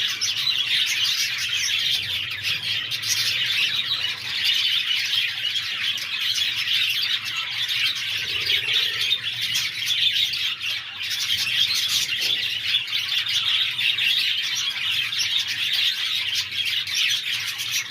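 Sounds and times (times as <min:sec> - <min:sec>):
budgerigars chattering and chirping: 0:00.0 - 0:17.9.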